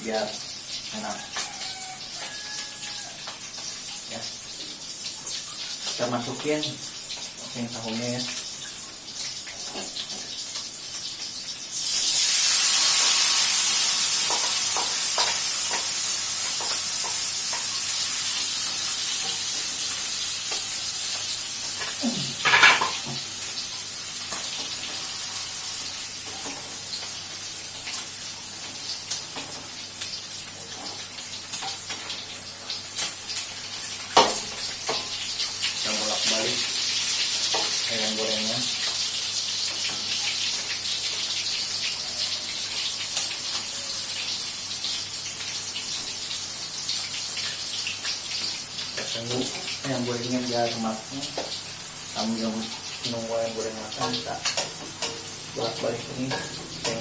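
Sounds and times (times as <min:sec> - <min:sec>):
hot oil sizzling: 0:00.0 - 0:57.0.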